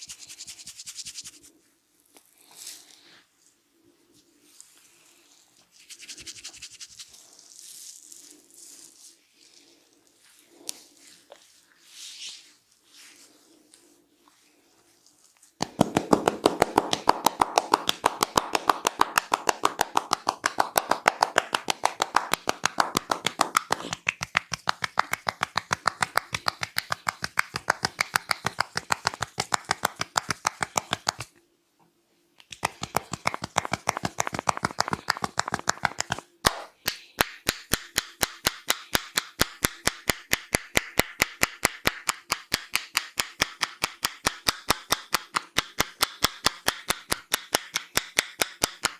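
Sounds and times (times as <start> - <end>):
hands slapping in massage strokes: 15.6 - 31.3, 32.4 - 48.9.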